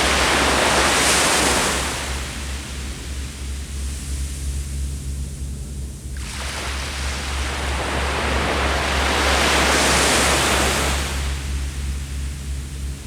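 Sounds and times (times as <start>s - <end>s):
ocean waves breaking on shore: 0.0s - 2.6s, 6.2s - 11.5s.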